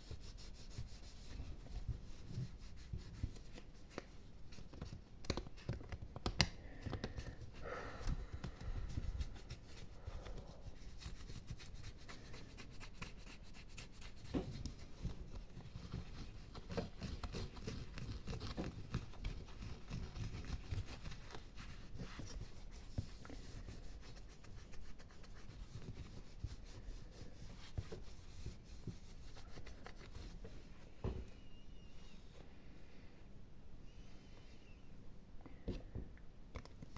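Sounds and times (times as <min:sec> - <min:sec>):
fingernails scratching an object: 0:10.6 - 0:30.6.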